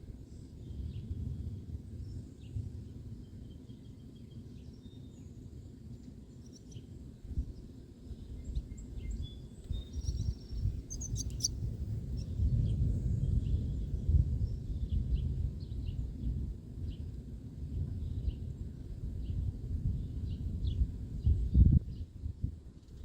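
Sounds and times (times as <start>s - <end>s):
wind buffeting microphone: 7.1s - 23.0s
birds chirping: 8.3s - 12.4s.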